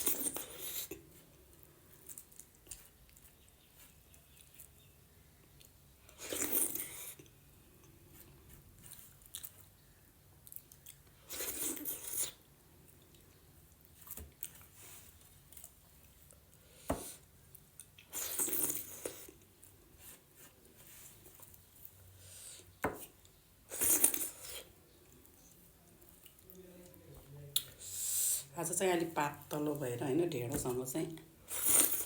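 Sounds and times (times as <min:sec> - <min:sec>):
wet chewing: 0:00.0 - 0:16.6.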